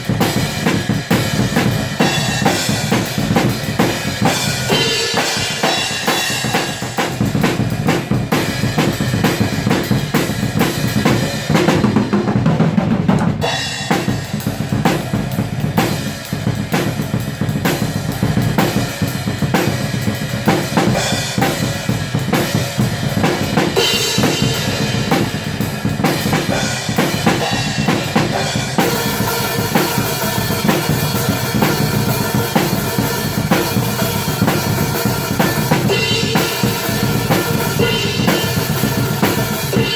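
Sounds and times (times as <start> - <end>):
black metal music: 0.0 - 39.9
fast drum kit playing: 0.0 - 39.9.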